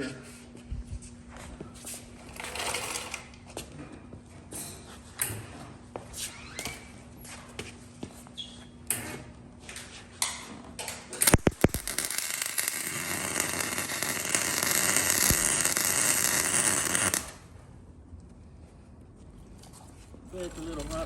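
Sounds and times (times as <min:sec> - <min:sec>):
welding arc crackling and hissing: 0:11.2 - 0:17.5.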